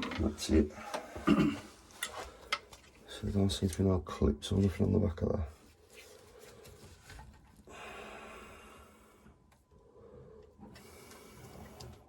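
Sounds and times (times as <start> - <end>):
person breathing out noisily: 7.7 - 9.1.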